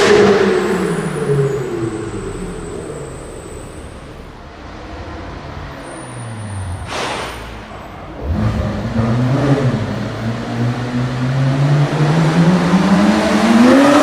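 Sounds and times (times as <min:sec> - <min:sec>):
car engine passing: 0:00.0 - 0:14.0
engine holding steady note: 0:00.0 - 0:14.0
sharp burst of noise: 0:05.8 - 0:08.0.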